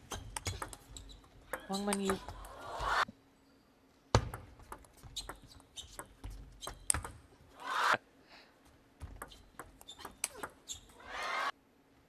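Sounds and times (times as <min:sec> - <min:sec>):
table tennis ball clicking: 0:04.3 - 0:07.2.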